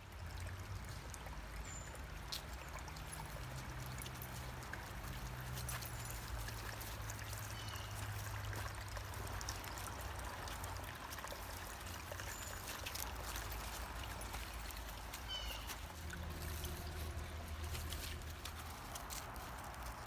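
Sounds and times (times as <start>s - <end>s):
creek water trickling: 0.0s - 20.0s.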